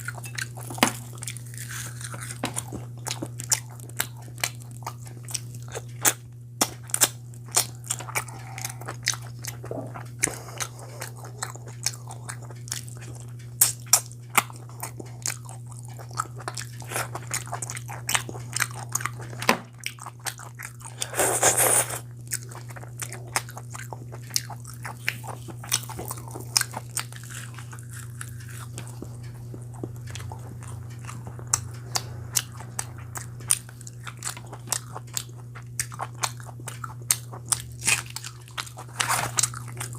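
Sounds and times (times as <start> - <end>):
person chewing crunchy food: 0.0 - 39.9
low hum: 26.0 - 36.7.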